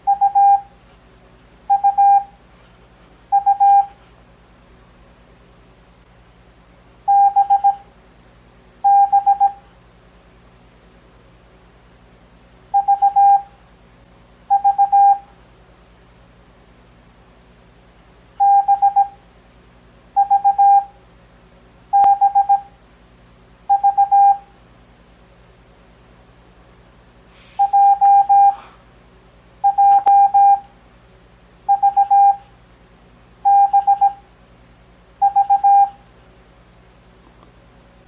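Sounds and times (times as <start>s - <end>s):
morse code beeps: 0.0s - 0.7s, 1.7s - 2.4s, 3.3s - 4.0s, 7.1s - 7.8s, 8.8s - 9.6s, 12.8s - 13.5s, 14.5s - 15.3s, 18.4s - 19.2s, 20.2s - 20.9s, 21.9s - 22.7s, 23.7s - 24.5s, 27.6s - 28.6s, 29.6s - 30.7s, 31.7s - 32.4s, 33.4s - 34.2s, 35.2s - 36.0s.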